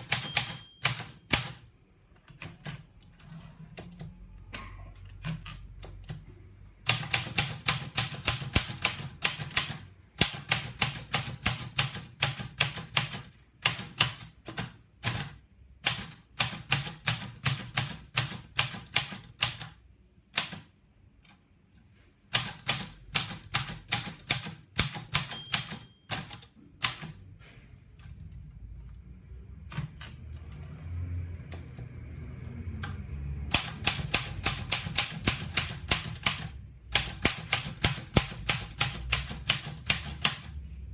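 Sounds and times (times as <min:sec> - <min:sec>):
manual typewriter typing: 0:00.0 - 0:04.2, 0:05.0 - 0:21.4, 0:22.3 - 0:27.2, 0:29.6 - 0:30.8, 0:31.4 - 0:40.6.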